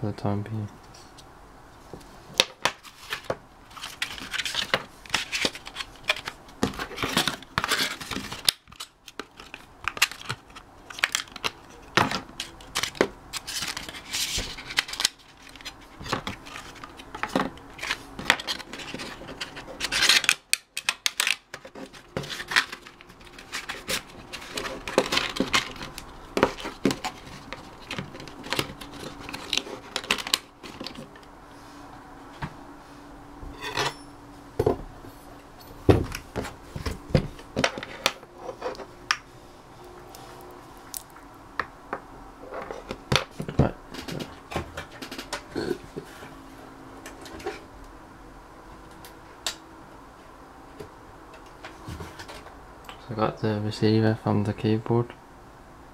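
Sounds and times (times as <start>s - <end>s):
plastic parts clicking and scraping: 2.5s - 31.3s, 37.6s - 38.9s, 42.4s - 45.6s.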